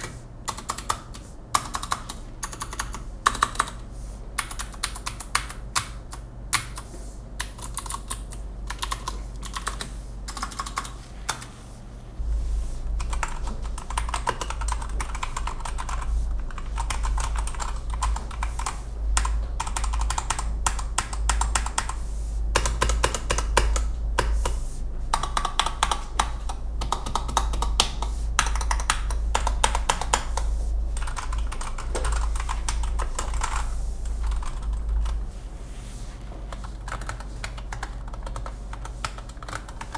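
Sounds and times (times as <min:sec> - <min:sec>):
mechanical keyboard typing: 0:00.0 - 0:03.8, 0:04.4 - 0:11.5, 0:13.0 - 0:22.0, 0:22.6 - 0:33.7, 0:34.3 - 0:35.2, 0:36.6 - 0:39.9.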